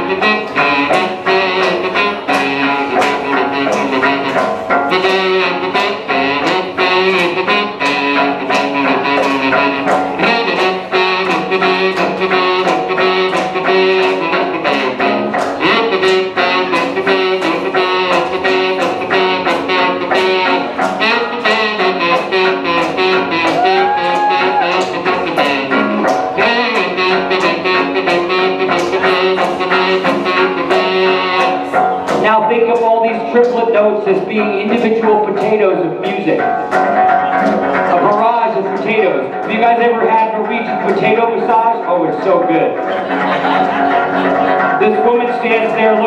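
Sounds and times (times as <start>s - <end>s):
fast rhythmic stringed instrument: 0.0s - 46.0s.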